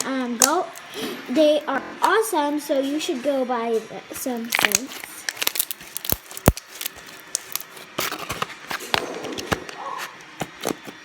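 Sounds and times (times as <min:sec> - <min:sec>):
slime squished by hand: 0:04.5 - 0:07.7.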